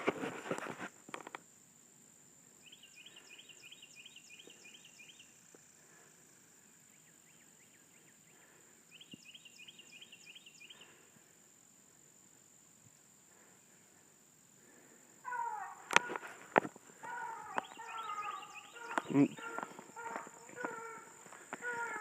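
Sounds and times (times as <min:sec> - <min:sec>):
rustle of footsteps: 0:00.0 - 0:01.4, 0:15.8 - 0:22.0
bird chirping: 0:02.6 - 0:11.0, 0:15.2 - 0:22.0
high-pitched insect drone: 0:15.3 - 0:22.0.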